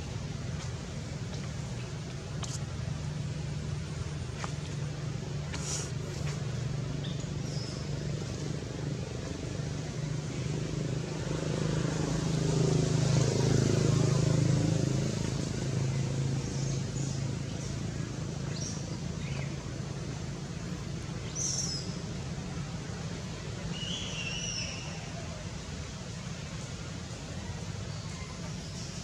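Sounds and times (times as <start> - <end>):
low engine hum: 0.0 - 29.0.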